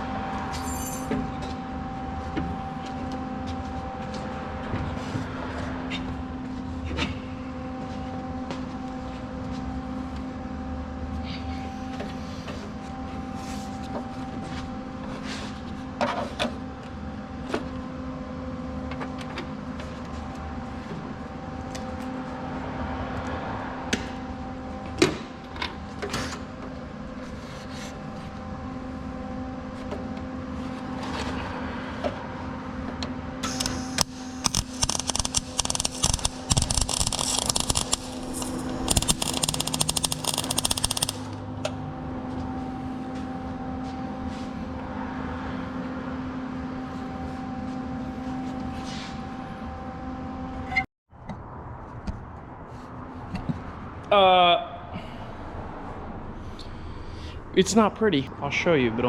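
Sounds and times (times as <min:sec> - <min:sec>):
electrical hum: 0:26.8 - 0:48.8
arc welding crackling: 0:33.4 - 0:41.4.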